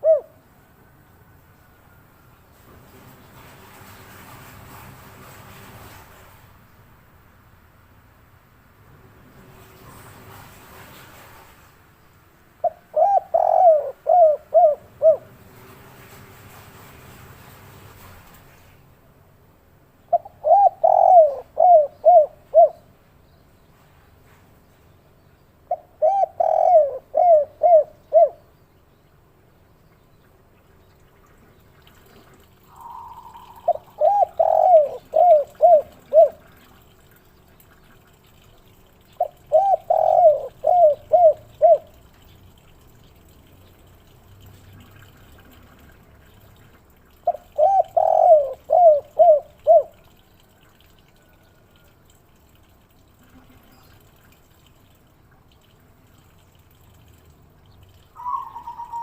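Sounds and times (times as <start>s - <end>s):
dove cooing: 0.0s - 0.4s, 12.6s - 15.3s, 20.1s - 22.8s, 25.7s - 28.4s, 32.7s - 36.6s, 39.2s - 42.0s, 47.2s - 50.1s, 58.2s - 59.0s.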